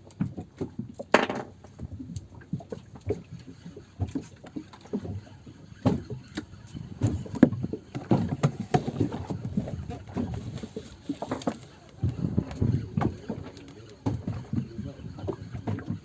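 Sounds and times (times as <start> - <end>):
water slapping boat hull: 0.0 - 16.0
fishing gear being handled: 5.8 - 16.0.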